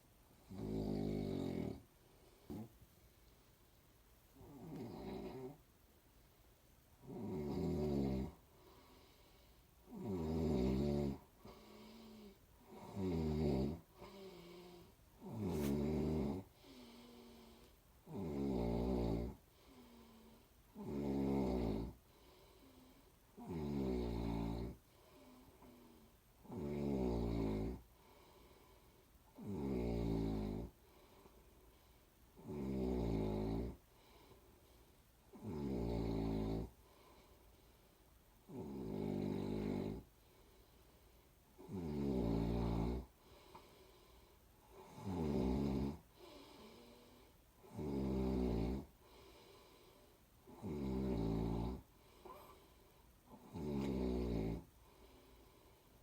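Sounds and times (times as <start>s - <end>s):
person snoring: 0.4s - 1.8s, 4.4s - 5.6s, 7.0s - 8.4s, 9.8s - 22.0s, 23.4s - 27.8s, 29.4s - 30.7s, 32.4s - 33.8s, 35.3s - 36.7s, 38.5s - 40.1s, 41.6s - 43.1s, 44.7s - 49.6s, 50.4s - 52.6s, 53.3s - 54.7s
soft breathing: 8.3s - 9.9s, 11.2s - 12.8s, 13.8s - 18.0s, 19.4s - 20.8s, 21.9s - 23.4s, 24.7s - 26.3s, 27.8s - 29.4s, 30.7s - 32.4s, 33.8s - 35.3s, 36.7s - 38.3s, 39.5s - 41.6s, 43.0s - 45.0s, 46.0s - 47.7s, 48.8s - 50.8s, 51.8s - 56.0s.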